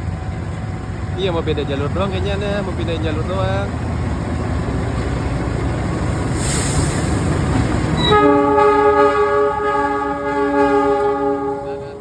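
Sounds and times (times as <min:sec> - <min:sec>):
diesel locomotive rumbling: 0:00.0 - 0:12.0
brief hiss: 0:06.3 - 0:07.3
locomotive horn blast: 0:08.0 - 0:12.0.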